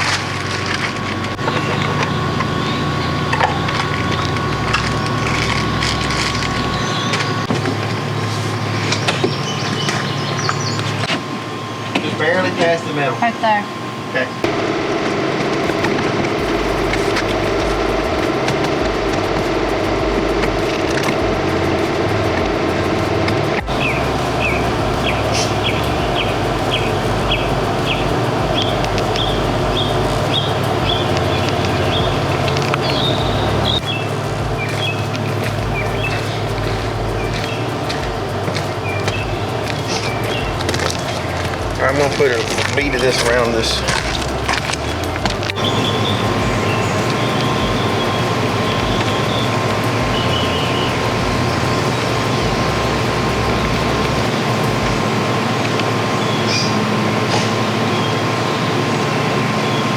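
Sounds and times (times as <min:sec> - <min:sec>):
wood cracking and splintering: 0:00.0 - 0:02.6, 0:14.5 - 0:49.2
power drill motor running: 0:00.0 - 0:59.9
steady background noise: 0:00.0 - 0:59.9
songbird whistling: 0:01.4 - 0:12.0, 0:15.7 - 0:59.9.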